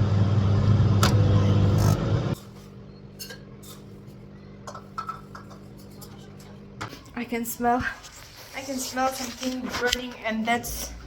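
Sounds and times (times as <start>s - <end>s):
microwave oven humming: 0.0s - 7.8s.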